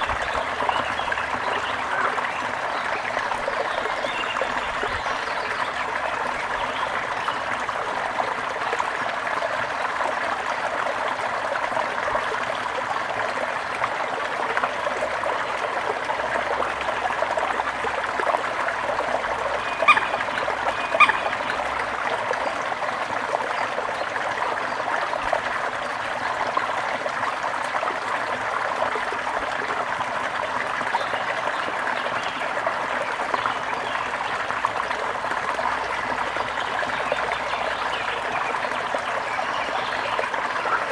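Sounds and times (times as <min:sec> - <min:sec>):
stream babbling: 0:00.0 - 0:40.9
bird calls: 0:19.4 - 0:22.6.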